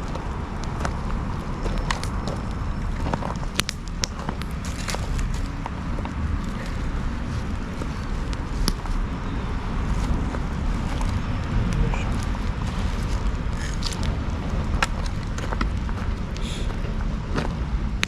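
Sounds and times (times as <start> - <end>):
bonfire crackling: 0.0 - 18.0
low rumble: 0.0 - 18.0.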